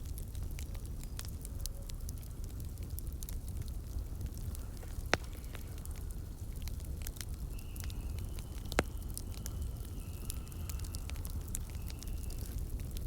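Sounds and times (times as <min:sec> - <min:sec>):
firewood crackling: 0:00.0 - 0:13.0
faint thin whistle: 0:07.3 - 0:12.7.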